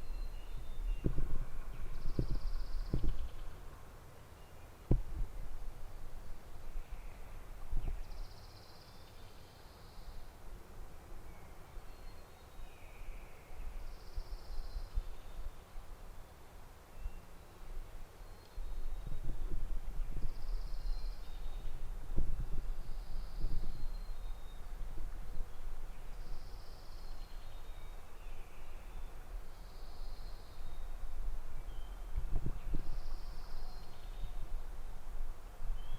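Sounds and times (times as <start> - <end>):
songbirds trilling: 0.0 - 4.8, 18.2 - 34.8.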